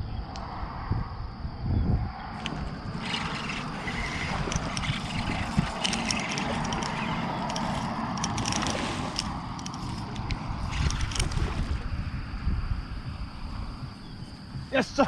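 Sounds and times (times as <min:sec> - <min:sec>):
water splashing against kayak hull: 0:02.4 - 0:11.9.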